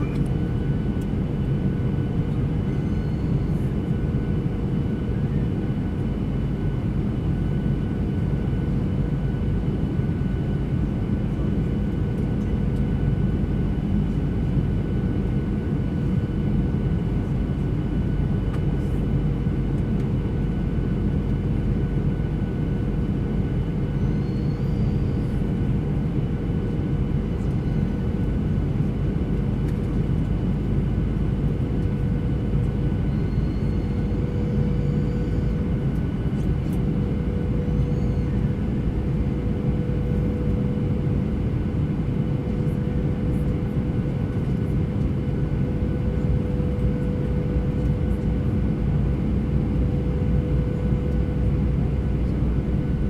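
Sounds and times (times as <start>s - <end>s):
constant hum: 0.0s - 53.0s
jet engine cabin rumble: 0.0s - 53.0s.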